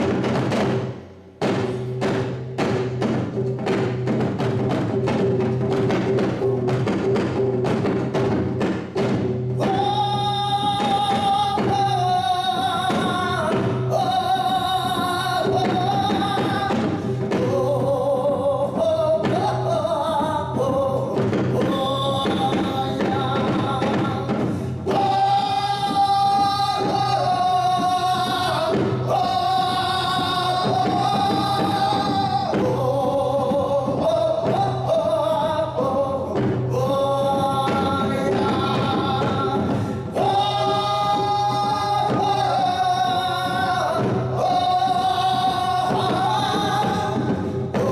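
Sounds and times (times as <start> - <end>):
sharp percussive strikes: 0.0 - 12.0
man singing with vibrato: 4.6 - 47.9.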